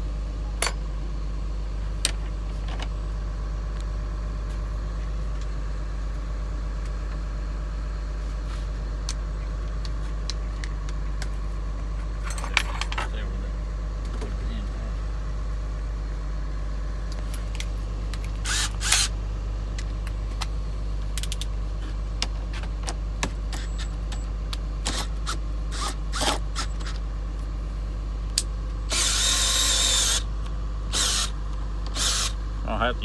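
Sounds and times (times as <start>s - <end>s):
low engine hum: 30.3s - 33.0s.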